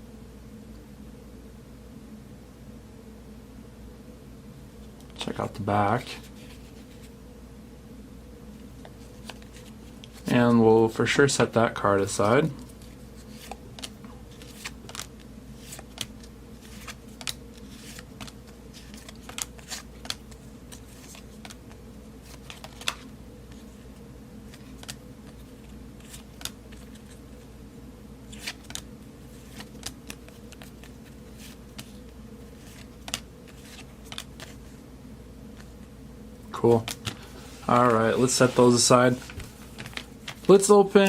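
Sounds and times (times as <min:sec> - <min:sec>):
steady low hum: 0:00.0 - 0:41.0
cards clicking and rustling: 0:08.8 - 0:10.6, 0:11.4 - 0:27.5, 0:28.3 - 0:34.8, 0:36.6 - 0:41.0.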